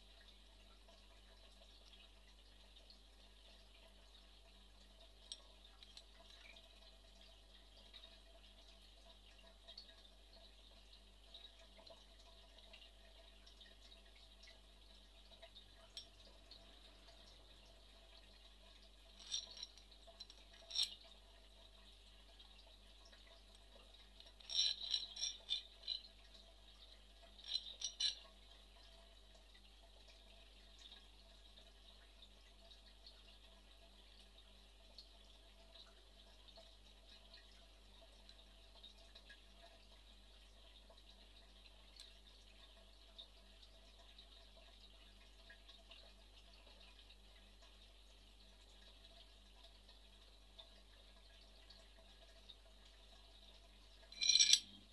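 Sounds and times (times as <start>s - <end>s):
faint background hiss: 0.0s - 54.9s
metal parts clinking: 19.2s - 21.0s, 24.2s - 26.0s, 27.4s - 28.2s, 54.2s - 54.8s.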